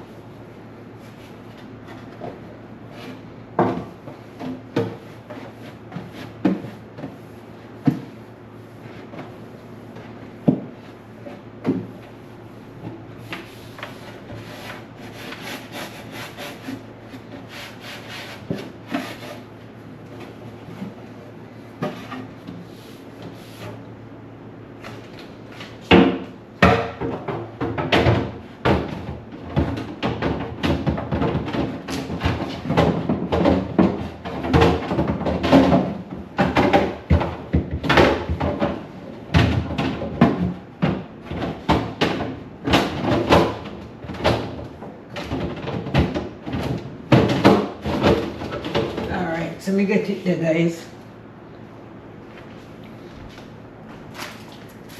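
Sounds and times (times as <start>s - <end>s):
scrubbing and rubbing: 13.3s - 19.5s.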